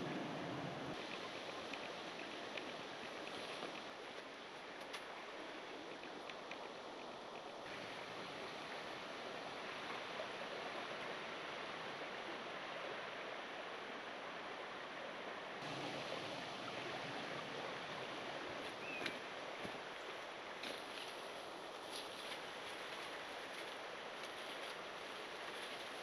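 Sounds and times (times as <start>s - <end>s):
outdoor rushing ambience: 0.0s - 1.0s.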